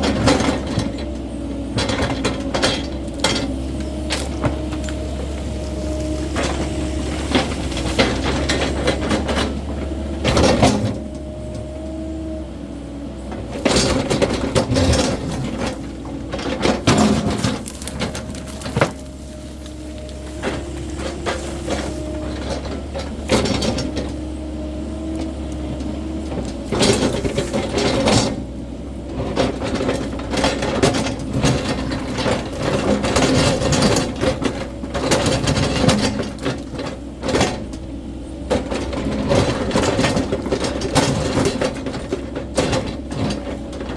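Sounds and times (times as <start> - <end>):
excavator diesel engine droning: 0.0 - 43.9
sharp knocks and cracks of digging: 1.9 - 11.0, 13.6 - 24.2.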